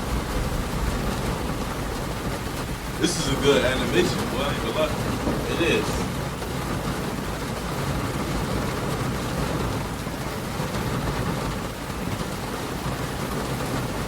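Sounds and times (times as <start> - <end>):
low rumble: 0.0 - 6.7
steady rain hiss: 0.0 - 14.0.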